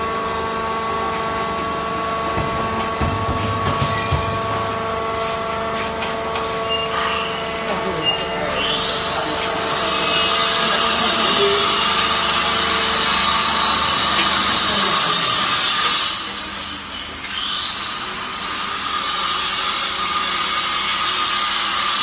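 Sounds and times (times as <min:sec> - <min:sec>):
machine loud steady hiss: 0:08.9 - 0:16.9.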